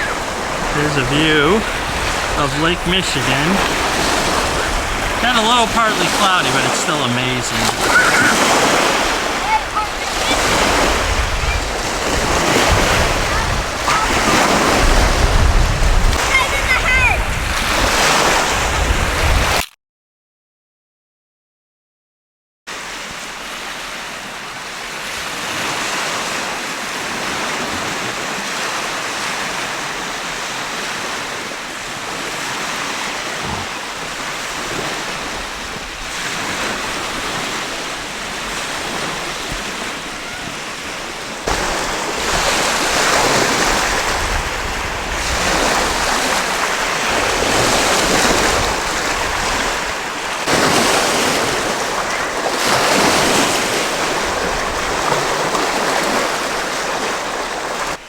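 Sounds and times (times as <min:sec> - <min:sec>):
waves washing ashore: 0:00.0 - 0:19.6, 0:22.7 - 0:58.0
wind buffeting microphone: 0:07.8 - 0:19.6, 0:40.5 - 0:50.1.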